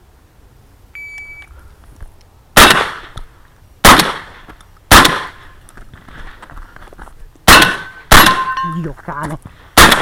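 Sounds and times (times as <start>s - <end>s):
shot timer beep: 1.0s - 1.5s
shotgun shots: 2.6s - 3.2s, 3.8s - 5.4s, 7.5s - 8.6s, 9.8s - 10.0s.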